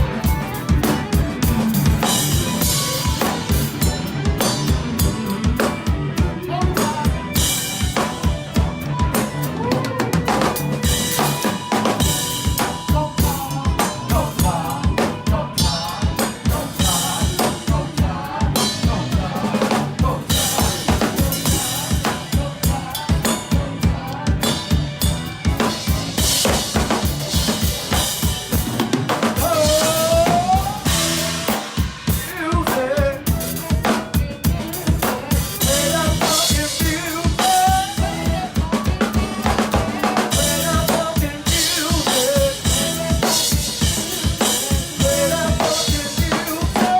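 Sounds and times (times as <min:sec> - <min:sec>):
live rock band playing: 0:00.0 - 0:46.9.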